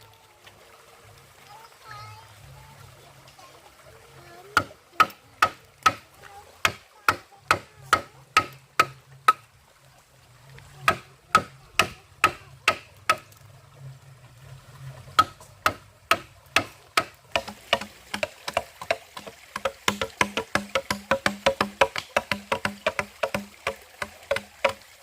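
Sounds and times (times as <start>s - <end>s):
tool knocking on wood: 7.5s - 9.4s, 10.9s - 13.2s, 15.2s - 24.8s.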